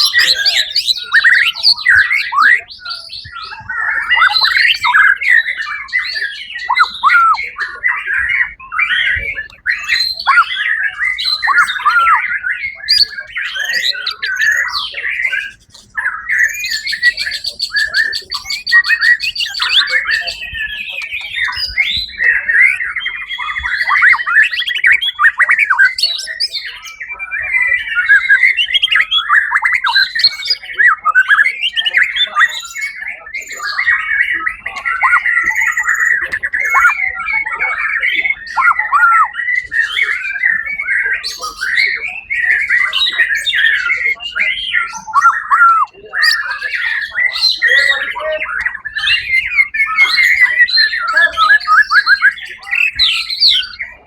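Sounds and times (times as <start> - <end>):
bird singing whistled notes: 0.0 - 54.0.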